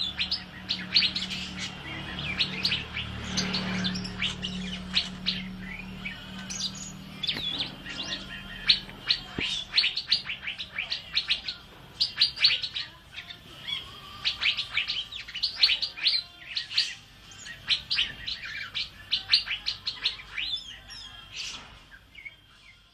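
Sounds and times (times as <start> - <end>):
bird chirping song: 0.0 - 22.9.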